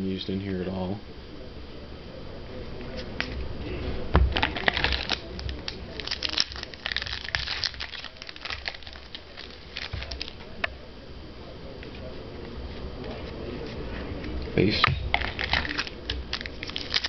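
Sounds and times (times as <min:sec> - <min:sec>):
card pack wrapper crinkling: 0:04.3 - 0:10.4, 0:15.1 - 0:17.0.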